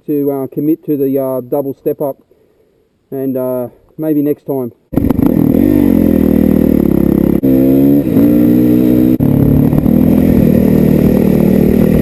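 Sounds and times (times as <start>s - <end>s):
dirt bike engine revving: 4.9s - 12.0s.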